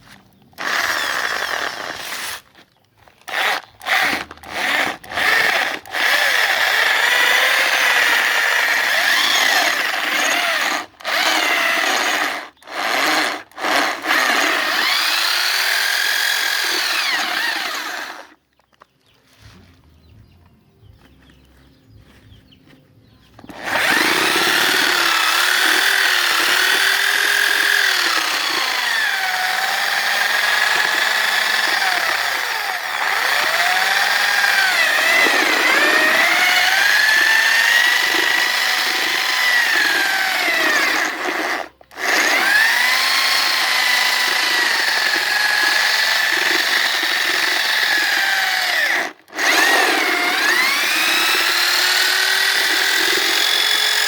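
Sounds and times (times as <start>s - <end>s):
electric drill motor whining: 0.6s - 2.6s, 3.2s - 18.4s, 23.4s - 54.0s.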